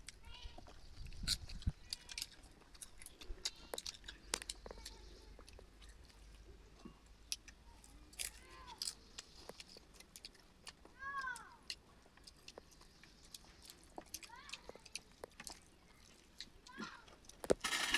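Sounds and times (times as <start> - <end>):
person chewing crunchy food: 0.0 - 10.9.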